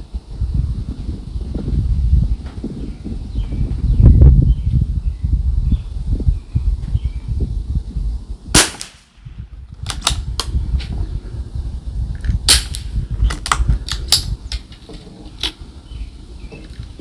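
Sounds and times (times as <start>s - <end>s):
rifle shot: 8.6s - 10.5s, 12.5s - 14.3s.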